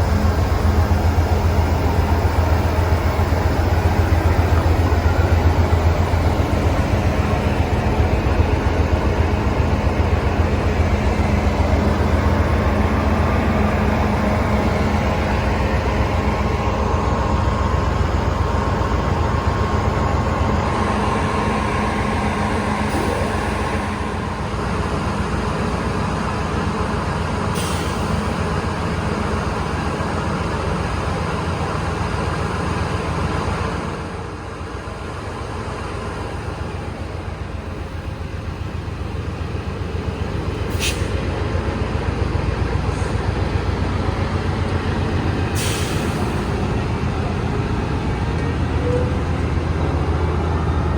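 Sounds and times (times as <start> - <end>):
train rolling on rails: 0.0 - 50.9.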